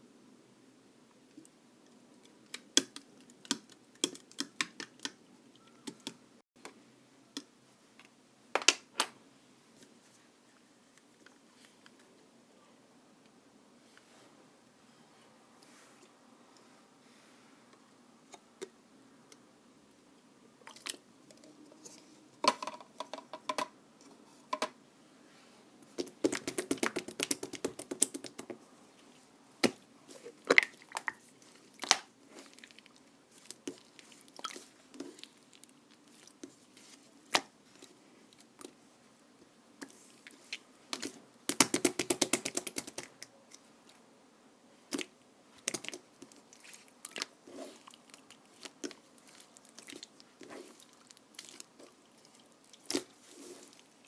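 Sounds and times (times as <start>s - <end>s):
slime clicking and popping: 26.0s - 28.5s, 41.0s - 43.1s
rapid crackling pops: 26.0s - 28.6s.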